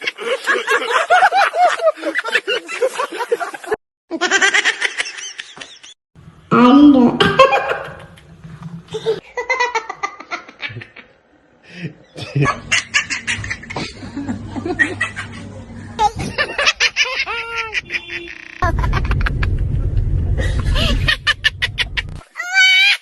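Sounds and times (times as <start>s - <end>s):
high-pitched giggling laughter: 0.0s - 6.0s, 12.3s - 19.6s
loud low background rumble: 13.2s - 22.2s.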